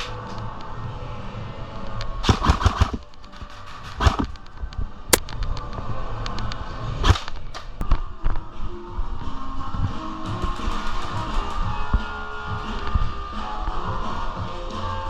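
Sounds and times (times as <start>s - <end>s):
airsoft guns firing: 2.2s - 3.0s.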